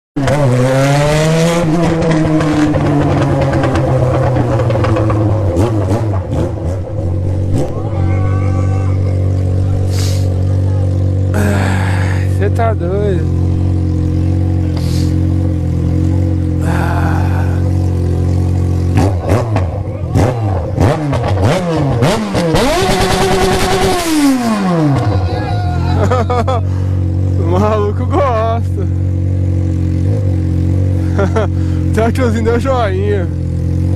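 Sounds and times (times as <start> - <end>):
motorcycle engine revving: 0.2 - 33.9
motorcycle engine idling: 2.8 - 20.8, 25.0 - 33.9.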